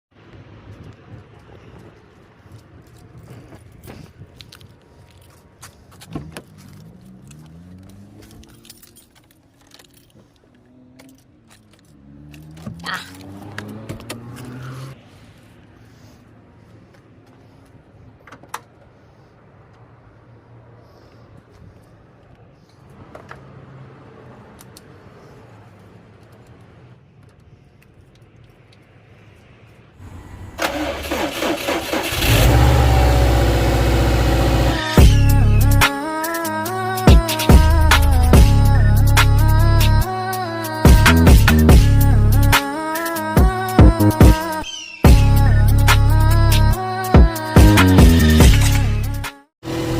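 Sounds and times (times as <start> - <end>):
faint clicks and handling noises: 0.2 - 14.5, 24.3 - 29.9
car engine starting and running: 6.0 - 15.0, 30.0 - 35.9, 47.6 - 49.9
keys jangling: 6.5 - 12.6.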